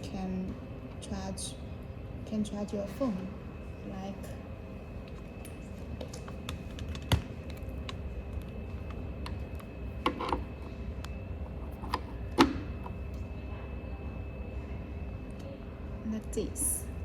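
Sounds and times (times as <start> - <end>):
charging cable clicks and knocks: 6.1 - 10.4.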